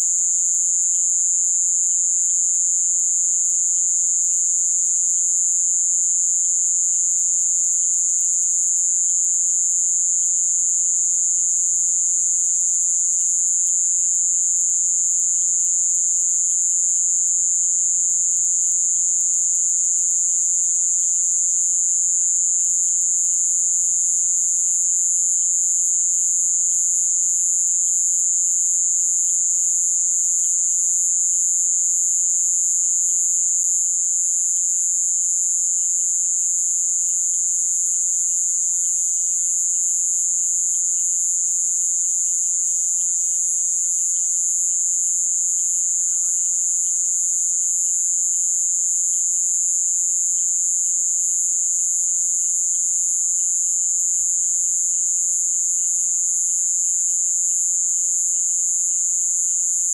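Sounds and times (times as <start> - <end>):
insects chirping and trilling: 0.0 - 59.9
high-pitched insect drone: 33.6 - 59.8.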